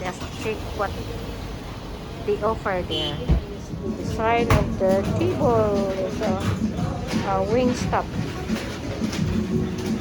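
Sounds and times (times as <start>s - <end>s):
background music with steady beat: 3.0s - 10.0s.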